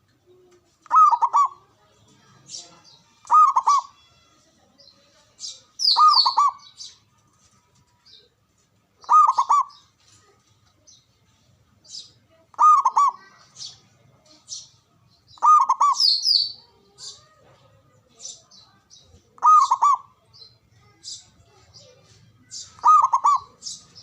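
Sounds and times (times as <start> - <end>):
dove cooing: 0.8 - 1.6, 3.3 - 3.9, 9.0 - 9.8, 12.5 - 13.3, 15.4 - 16.3, 19.4 - 20.2, 22.8 - 23.8.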